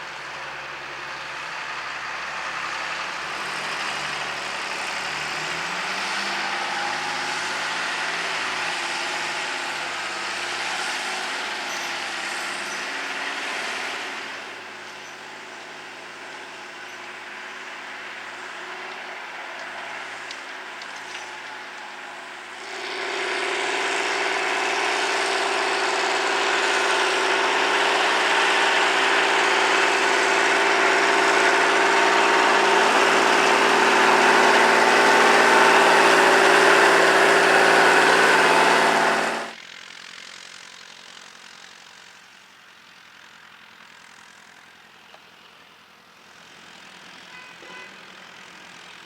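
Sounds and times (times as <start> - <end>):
tractor engine running under load: 0.0 - 49.0.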